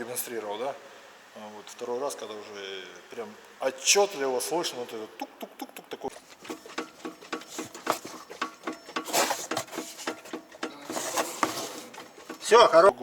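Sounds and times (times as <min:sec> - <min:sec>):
dull knocking from suspension: 0:06.2 - 0:12.7.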